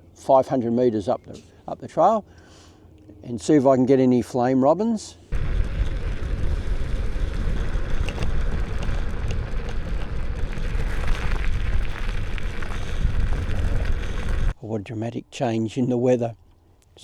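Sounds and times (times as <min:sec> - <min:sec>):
electric scooter rumbling: 0:05.3 - 0:14.6
wind buffeting microphone: 0:05.3 - 0:14.6.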